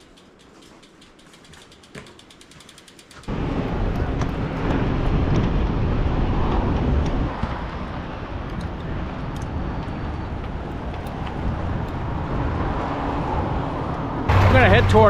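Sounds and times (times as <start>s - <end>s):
outdoor traffic noise: 0.0s - 15.0s
wind rumbling on microphone: 3.3s - 15.0s.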